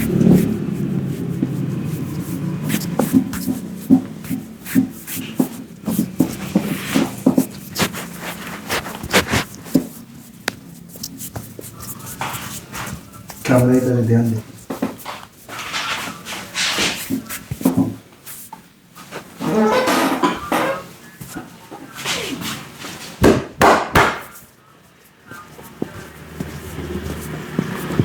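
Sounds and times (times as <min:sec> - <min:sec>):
hands slapping and tapping on head: 0:23.2 - 0:24.4.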